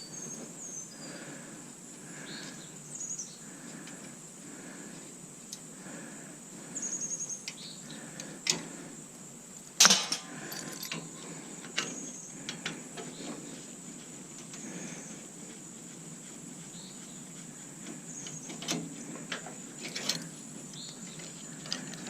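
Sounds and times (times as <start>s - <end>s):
loud metal clank with ring: 9.8s - 10.9s
metal clicks and clinks: 9.8s - 11.1s.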